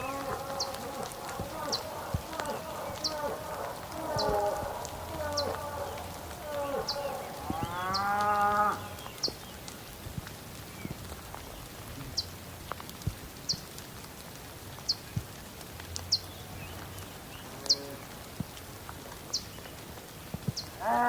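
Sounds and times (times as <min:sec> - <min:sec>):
bird chirping: 0:00.0 - 0:09.7
light rain hiss: 0:00.0 - 0:21.0
raindrops ticking: 0:00.0 - 0:21.0.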